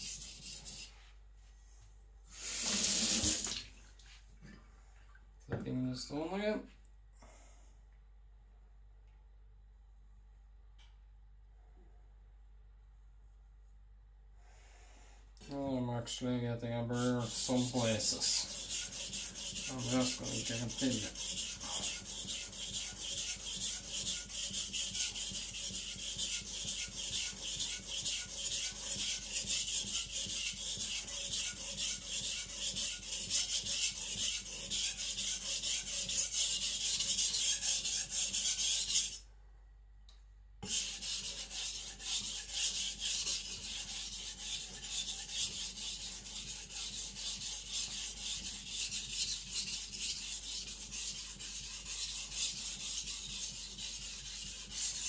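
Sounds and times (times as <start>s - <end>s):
knife scraping on whetstone: 17.0s - 39.2s, 40.6s - 55.0s.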